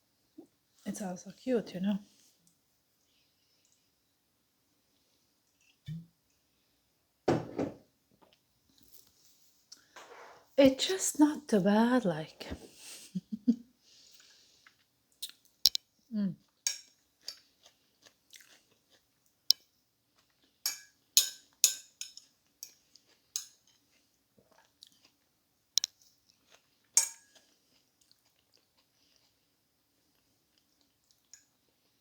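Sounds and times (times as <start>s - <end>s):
person chewing food: 14.0s - 15.8s, 16.5s - 21.1s, 22.2s - 32.0s.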